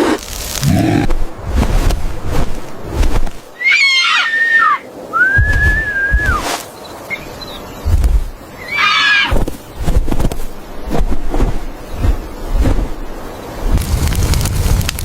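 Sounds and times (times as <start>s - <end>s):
high whistle-like calls: 3.6s - 6.5s
low rumbling: 9.4s - 15.0s.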